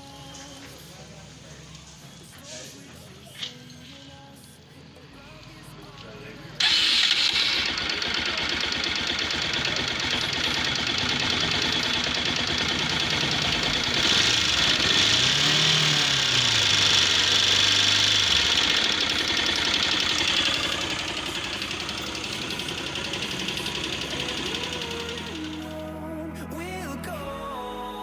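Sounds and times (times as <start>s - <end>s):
motorcycle engine idling: 6.6s - 26.0s.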